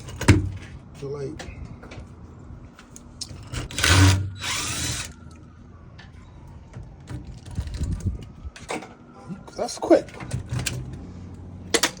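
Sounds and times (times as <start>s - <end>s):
power drill running: 3.7s - 5.2s.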